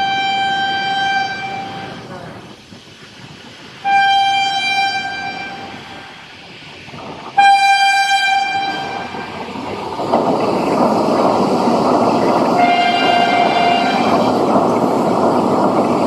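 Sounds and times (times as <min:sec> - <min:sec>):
train horn blast: 0:00.0 - 0:02.0, 0:03.8 - 0:05.8, 0:07.4 - 0:09.2, 0:12.6 - 0:14.3
train rushing past: 0:00.0 - 0:16.0.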